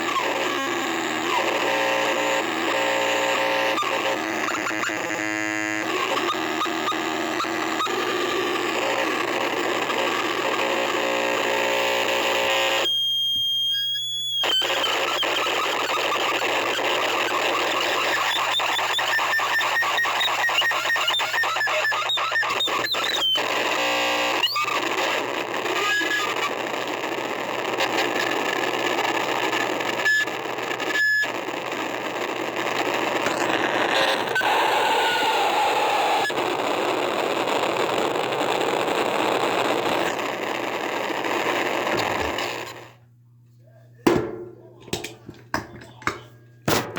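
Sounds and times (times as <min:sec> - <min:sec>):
distorted noise music: 0:00.0 - 0:12.8, 0:14.0 - 0:43.0.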